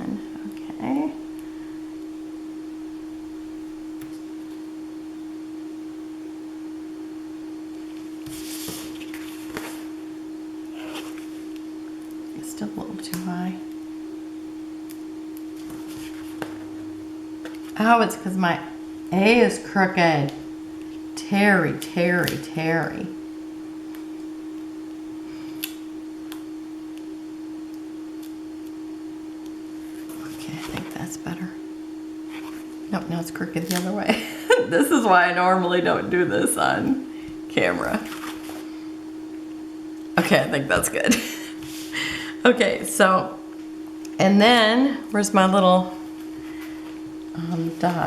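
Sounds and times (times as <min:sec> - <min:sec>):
steady single-pitched hum: 0:00.0 - 0:48.0
paper rustling: 0:08.2 - 0:09.9, 0:15.6 - 0:16.6.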